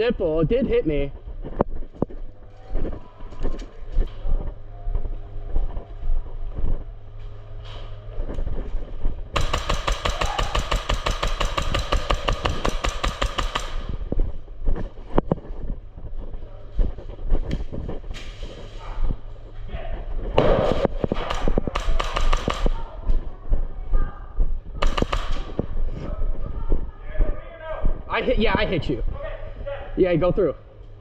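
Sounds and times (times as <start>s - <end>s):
airsoft gun full-auto burst: 9.4s - 13.9s, 21.3s - 22.8s.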